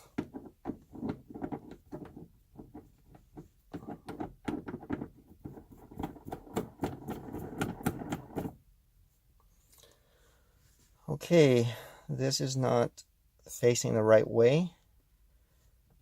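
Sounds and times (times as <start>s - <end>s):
shift knob clicking and scraping: 0.2s - 8.6s.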